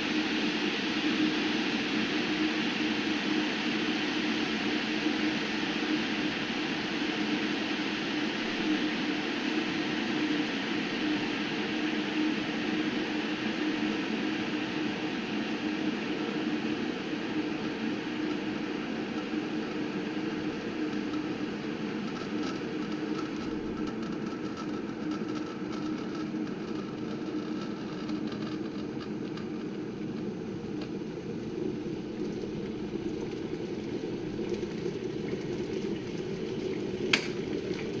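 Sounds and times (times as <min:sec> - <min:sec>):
electric kettle heating water: 0:00.0 - 0:38.0
kettle switch click: 0:37.1 - 0:37.4.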